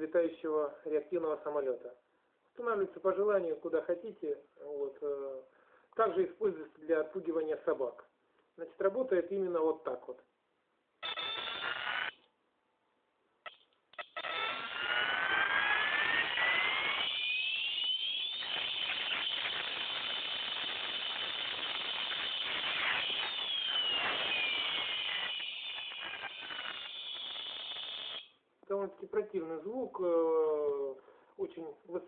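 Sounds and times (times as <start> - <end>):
electronic jet siren whistling: 11.0 - 12.2, 13.5 - 28.3.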